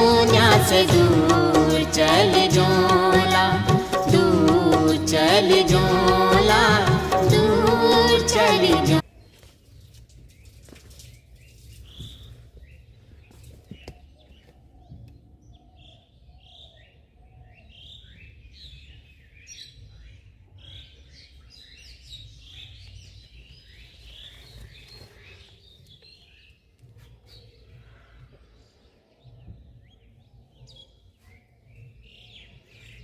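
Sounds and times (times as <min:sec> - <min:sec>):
sung music track: 0:00.0 - 0:09.0
small birds chirping: 0:09.1 - 0:33.0.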